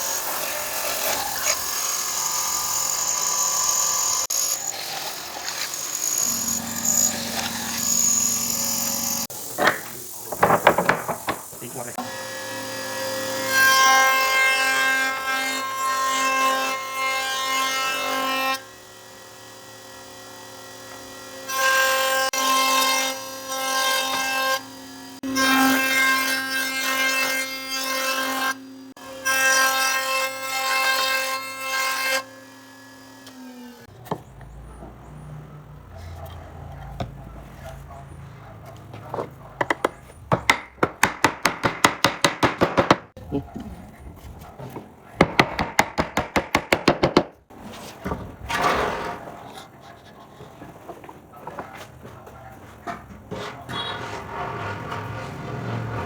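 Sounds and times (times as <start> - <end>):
woodworking machine whine: 0.0 - 13.4.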